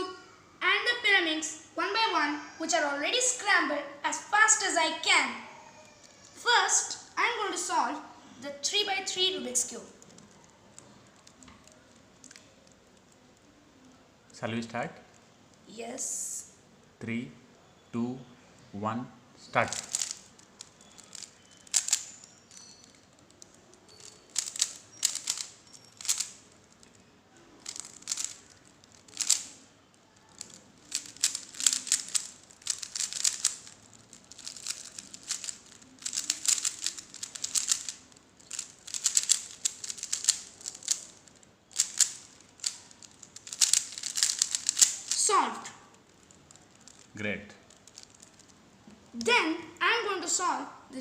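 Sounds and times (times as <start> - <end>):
puzzle cube clicking and rattling: 9.2 - 14.4, 19.6 - 49.6.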